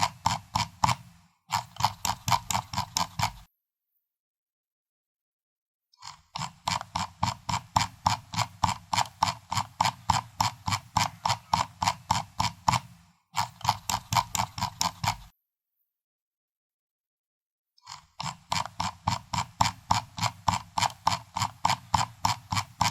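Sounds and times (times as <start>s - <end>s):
mouse scroll wheel clicks: 0.0s - 3.5s, 6.0s - 15.4s, 17.8s - 22.9s.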